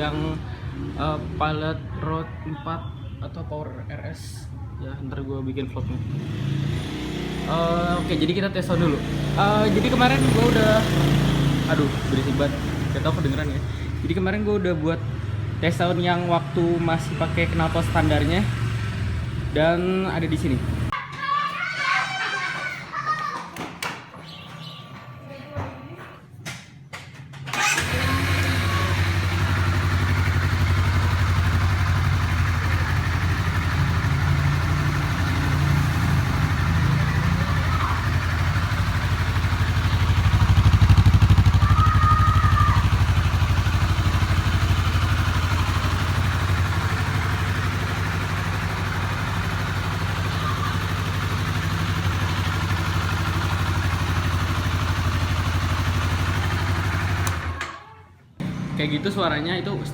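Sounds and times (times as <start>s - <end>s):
motorcycle engine idling: 7.5s - 14.4s, 27.5s - 57.6s.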